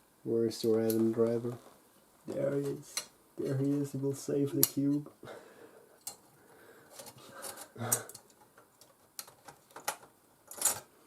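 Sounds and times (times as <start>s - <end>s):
screwdriver and metal parts clicking: 6.0s - 6.2s, 6.9s - 10.9s.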